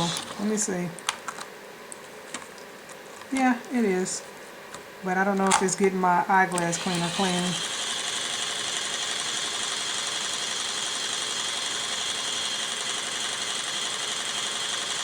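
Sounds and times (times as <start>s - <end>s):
toy washing machine motor running: 0.0s - 0.6s, 6.6s - 15.0s.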